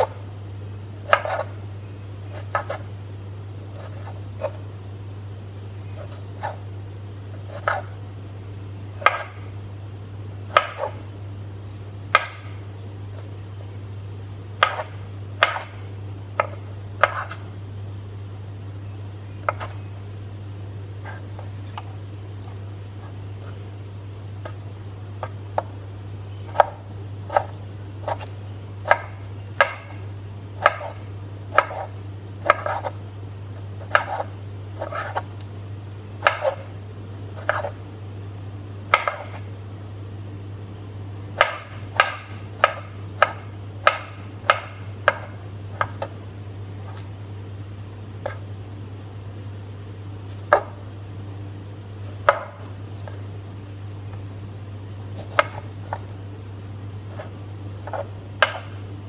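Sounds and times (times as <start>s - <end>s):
steady low hum: 0.0s - 59.0s
knife chopping on cutting board: 0.9s - 1.6s, 2.2s - 2.9s, 3.6s - 4.6s, 5.9s - 6.7s, 7.3s - 8.0s, 8.9s - 9.5s, 10.3s - 11.0s, 12.1s - 12.6s, 14.6s - 17.5s, 19.4s - 19.8s, 24.4s - 33.0s, 33.6s - 35.4s, 36.0s - 37.8s, 38.8s - 39.5s, 41.3s - 47.1s, 47.8s - 48.5s, 50.3s - 50.9s, 52.0s - 53.3s, 55.0s - 56.1s, 57.1s - 58.9s.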